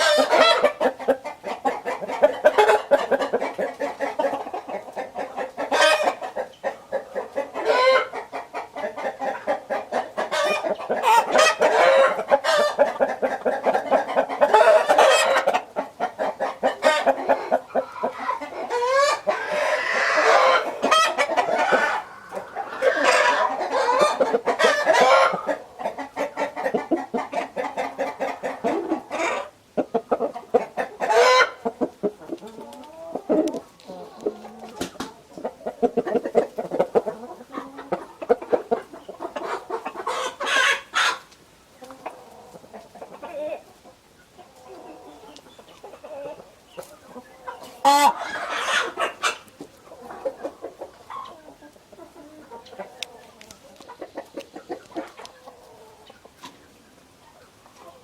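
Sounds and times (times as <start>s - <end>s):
roosters crowing: 0.0s - 1.0s, 7.6s - 8.2s, 10.1s - 15.7s, 16.7s - 25.8s, 47.3s - 49.4s
chickens clucking: 0.0s - 58.0s.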